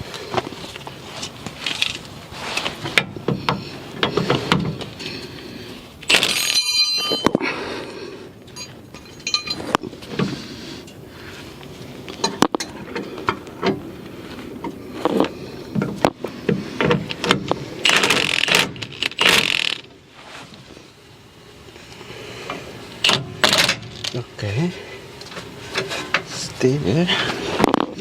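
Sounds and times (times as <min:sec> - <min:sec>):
wrench clicking and clinking on metal: 0:08.5 - 0:09.6.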